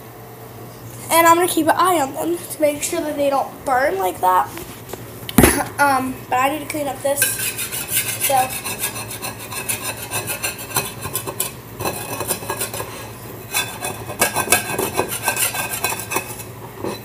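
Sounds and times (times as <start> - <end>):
utensil scraping a plate: 7.1 - 17.0.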